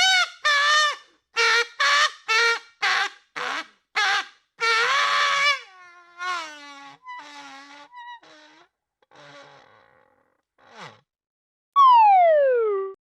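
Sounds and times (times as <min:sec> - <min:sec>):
wavering comedy calls sliding downward: 0:02.8 - 0:09.7.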